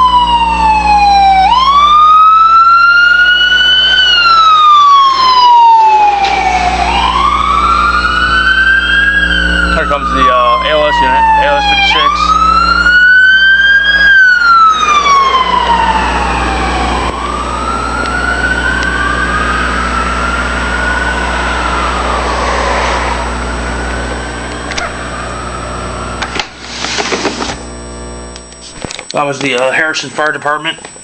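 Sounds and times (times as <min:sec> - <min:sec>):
ambulance siren wailing: 0:00.0 - 0:27.8
steady low hum: 0:00.0 - 0:30.6
rustling noise: 0:26.5 - 0:27.6.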